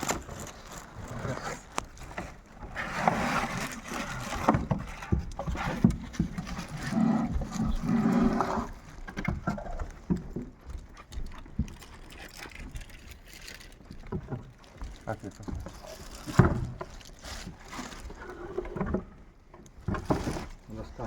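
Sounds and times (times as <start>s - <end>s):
packaging rubbing and scraping: 0.0s - 9.0s, 14.6s - 18.8s.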